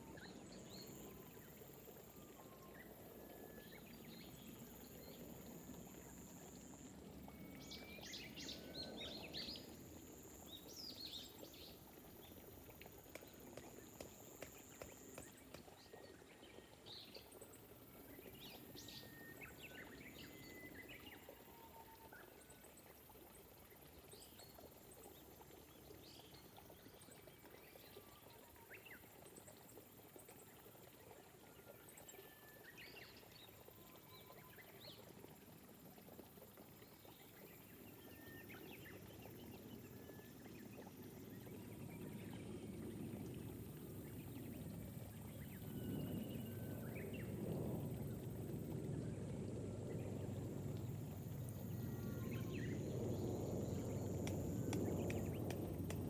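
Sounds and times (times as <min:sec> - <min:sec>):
gentle rain: 0:00.0 - 0:56.0
small birds chirping: 0:51.5 - 0:56.0.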